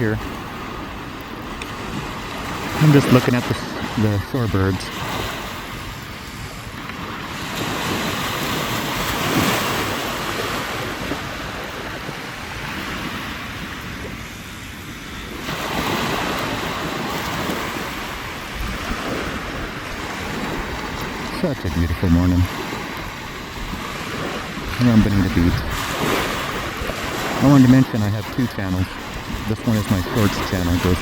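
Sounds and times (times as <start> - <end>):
waves breaking on beach: 0.0 - 31.0.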